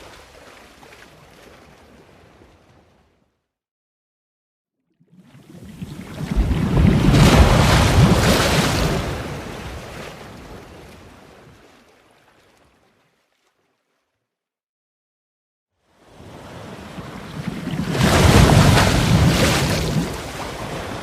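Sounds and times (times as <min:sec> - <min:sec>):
sea wave breaking: 0:05.6 - 0:10.7, 0:16.2 - 0:21.0.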